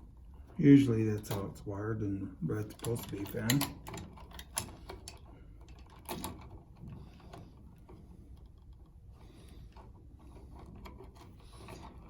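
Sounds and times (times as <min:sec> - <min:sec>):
handling of electrical wires: 0:02.5 - 0:12.0.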